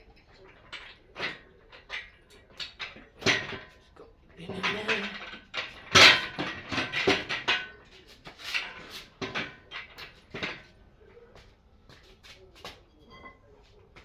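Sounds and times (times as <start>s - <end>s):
metal tools clanking: 4.4s - 10.7s.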